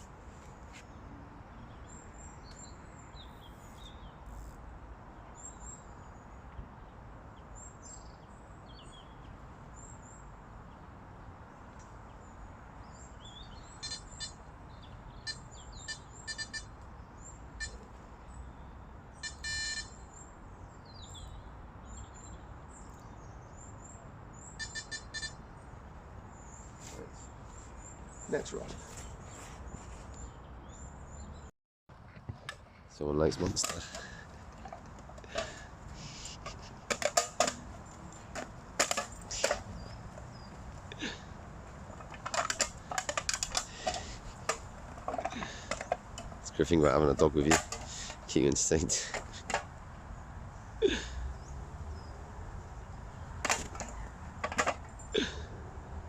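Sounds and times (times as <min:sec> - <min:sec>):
small birds chirping: 0:00.6 - 0:31.5, 0:32.7 - 0:55.6
bite alarm beeps: 0:13.8 - 0:14.4, 0:15.3 - 0:16.7, 0:17.6 - 0:17.8, 0:19.2 - 0:20.1, 0:24.6 - 0:25.4.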